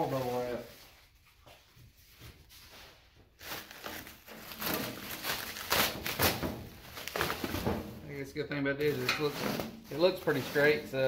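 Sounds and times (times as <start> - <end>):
bubble wrap crinkling: 2.6 - 7.8.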